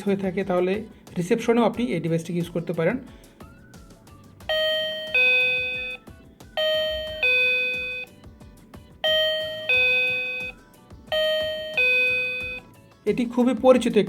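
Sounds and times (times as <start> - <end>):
doorbell ding-dong chime: 4.5 - 6.0, 6.6 - 8.2, 9.0 - 12.7.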